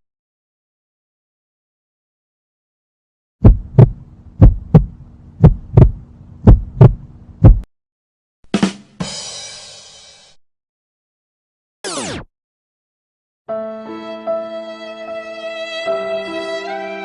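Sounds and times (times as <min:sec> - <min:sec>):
low hum: 0:03.4 - 0:07.6
heartbeat thumps: 0:03.4 - 0:07.7.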